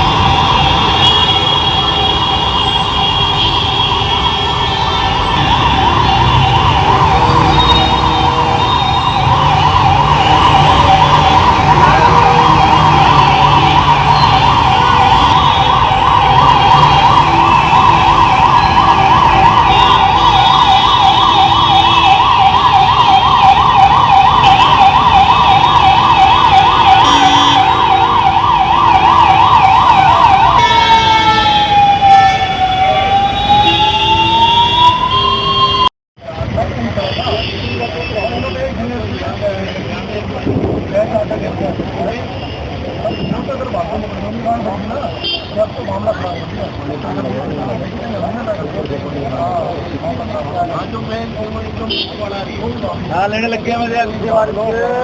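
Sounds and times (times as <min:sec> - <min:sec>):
emergency vehicle siren: 0:00.0 - 0:35.9.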